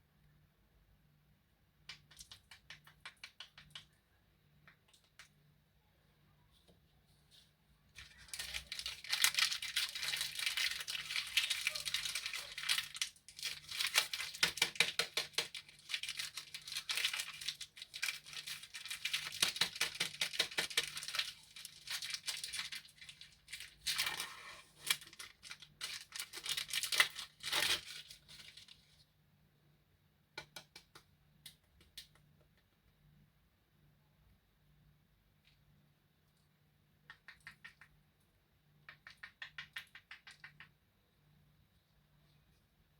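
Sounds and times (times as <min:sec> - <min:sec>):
plastic wrappers crinkling: 0:08.0 - 0:28.9.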